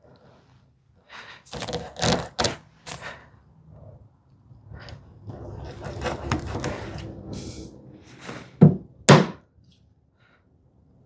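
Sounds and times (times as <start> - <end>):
scraping and handling noise: 4.7 - 8.6.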